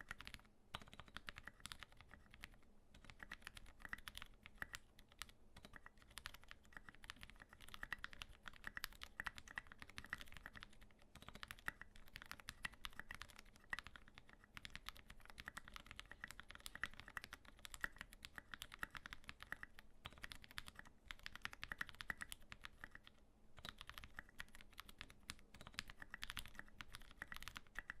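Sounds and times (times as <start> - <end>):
mechanical keyboard typing: 0.0 - 28.0.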